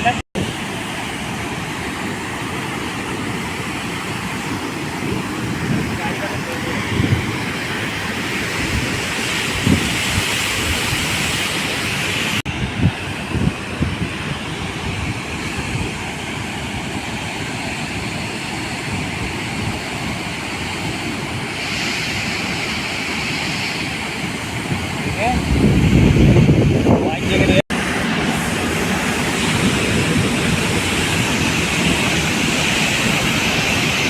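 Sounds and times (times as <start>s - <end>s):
water rushing through dam gates: 0.0s - 34.0s
wind buffeting microphone: 0.0s - 34.0s.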